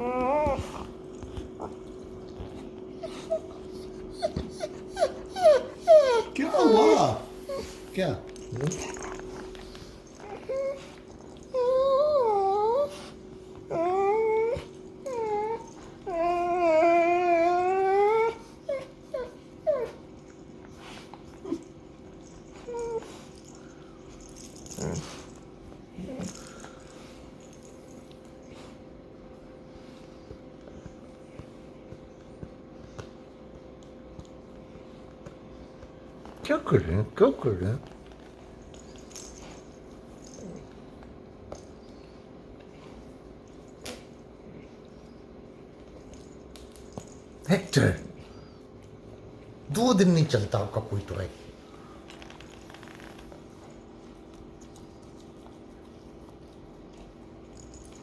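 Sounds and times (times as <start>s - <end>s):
dog whimpering: 0.0s - 20.2s, 22.4s - 23.5s
dog whining: 0.0s - 27.5s, 51.9s - 53.9s.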